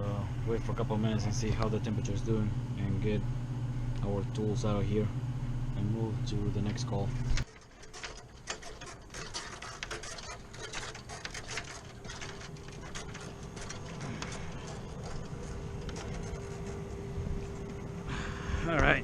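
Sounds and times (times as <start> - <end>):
faint steady hum: 0.0 - 19.0
hand tools clicking and rattling: 7.4 - 16.8.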